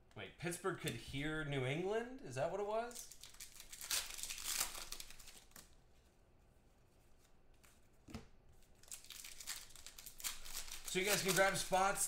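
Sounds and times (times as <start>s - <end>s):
cards and wrapper rustling: 2.9s - 5.8s, 8.7s - 12.0s
cards scraping and flicking: 8.9s - 11.9s.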